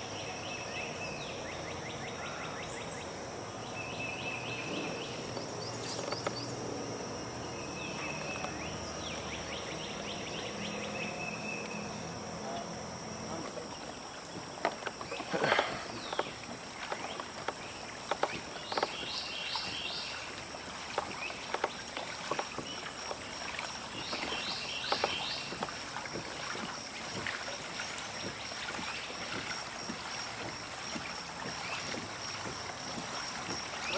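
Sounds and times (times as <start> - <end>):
bird chirping: 0.0 - 6.7, 7.4 - 12.7, 13.3 - 20.4
water noise: 0.0 - 33.9
light knocks against boat: 14.3 - 20.1, 24.0 - 33.9.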